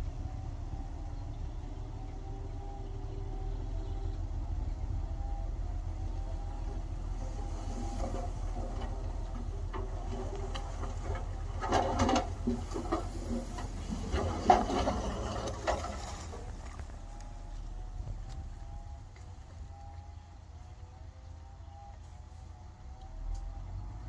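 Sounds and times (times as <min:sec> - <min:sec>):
heavy machinery rumbling: 0:00.0 - 0:24.0
rattling and clattering: 0:07.7 - 0:17.1.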